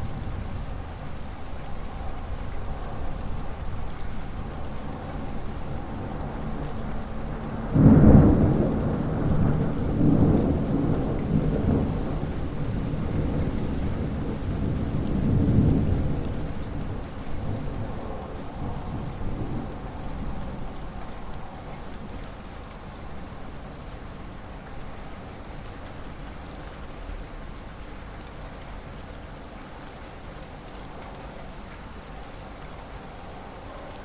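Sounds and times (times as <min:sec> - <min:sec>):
steady rain: 0:00.0 - 0:34.0
thunder rumbling: 0:04.7 - 0:22.2.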